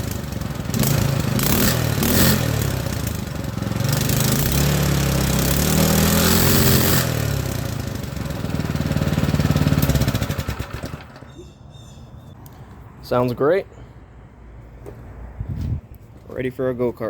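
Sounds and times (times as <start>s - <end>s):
small engine running: 0.0s - 11.4s.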